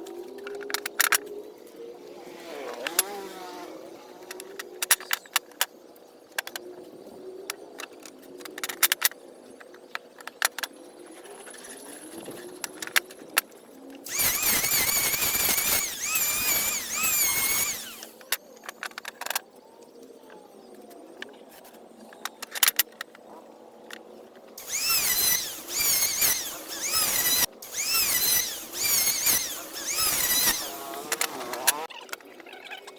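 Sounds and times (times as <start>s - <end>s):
power tool whining: 2.0s - 5.1s, 14.0s - 19.1s, 24.6s - 31.9s.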